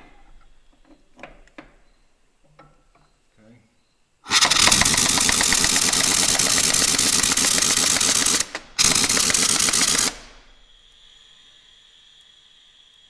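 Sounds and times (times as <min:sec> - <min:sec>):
impact wrench hammering: 0:04.3 - 0:10.3.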